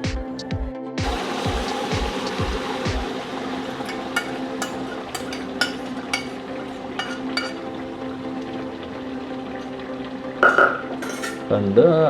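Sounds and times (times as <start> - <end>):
faint sizzle: 1.0 - 12.0
metal spoon clinking against pan: 3.9 - 6.4, 7.0 - 7.7, 10.4 - 11.5.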